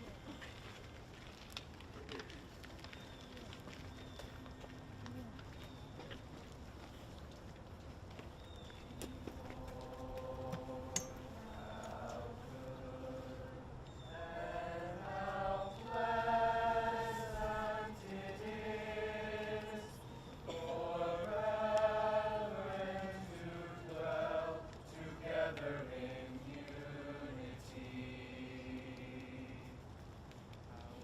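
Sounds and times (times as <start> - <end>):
choir singing: 9.1 - 29.8.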